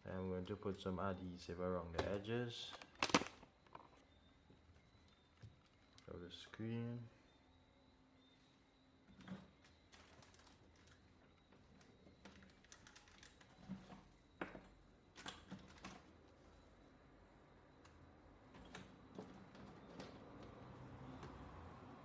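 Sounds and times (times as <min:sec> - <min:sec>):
faint background hum: 0:00.0 - 0:22.0.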